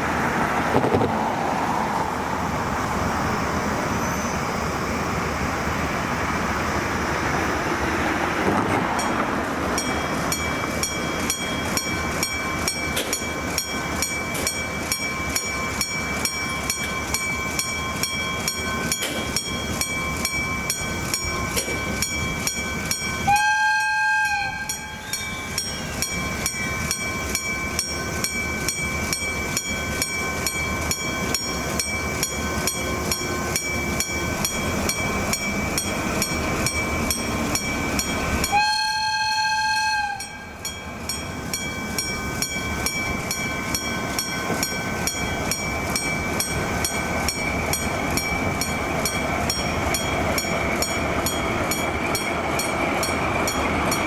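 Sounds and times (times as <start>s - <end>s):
diesel freight train running: 0.0s - 54.0s
level crossing warning bell: 8.9s - 54.0s
locomotive horn blasts: 23.2s - 25.1s, 38.4s - 40.6s.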